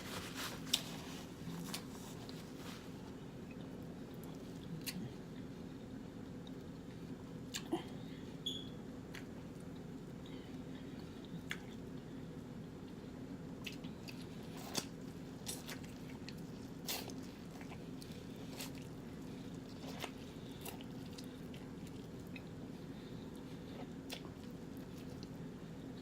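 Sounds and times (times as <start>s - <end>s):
wet chewing and lip-smacking: 11.0s - 12.0s, 13.6s - 26.0s.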